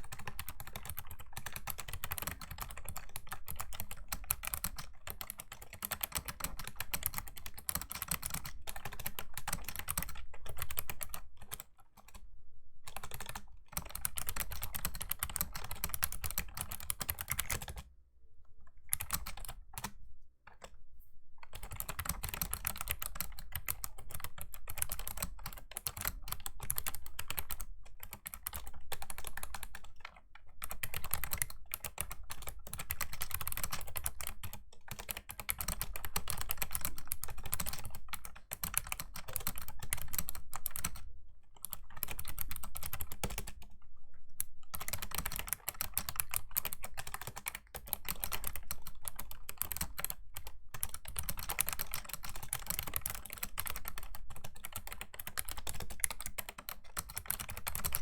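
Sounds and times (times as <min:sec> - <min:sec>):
fast typing on keyboard: 0:00.0 - 0:17.9, 0:18.9 - 0:20.8, 0:21.4 - 0:58.0.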